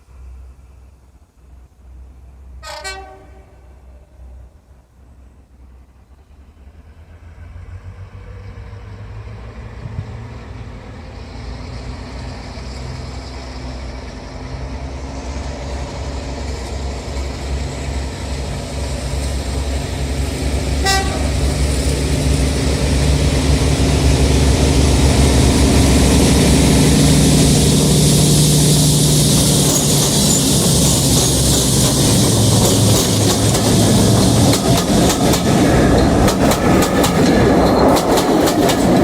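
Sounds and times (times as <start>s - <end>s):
diesel locomotive engine rumble: 0.0s - 39.0s
locomotive horn toot: 2.6s - 4.0s, 20.8s - 21.5s.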